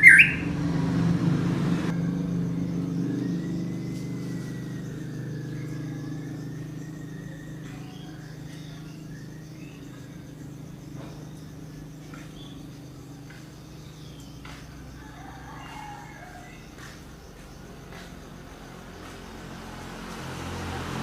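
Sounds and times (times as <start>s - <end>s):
faint bird chirps: 0.0s - 0.5s, 2.1s - 18.0s.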